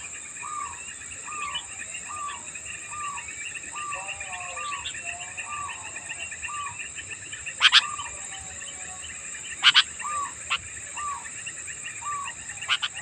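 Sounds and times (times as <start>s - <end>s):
birds chattering: 0.0s - 13.0s
sharp double bird calls: 7.6s - 8.1s, 9.5s - 11.2s, 12.0s - 13.0s.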